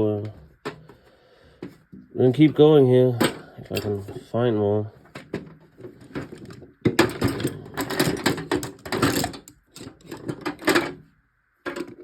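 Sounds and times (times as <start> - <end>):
hand tools clattering: 3.1 - 4.2, 6.0 - 11.0.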